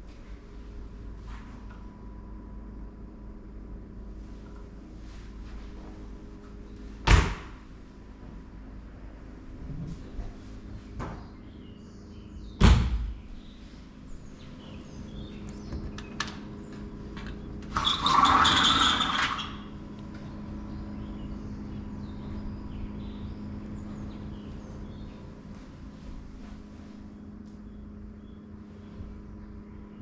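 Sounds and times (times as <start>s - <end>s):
steady low hum: 0.0s - 30.0s
door sliding rumble: 13.4s - 20.3s
faint bird chirps: 27.1s - 30.0s.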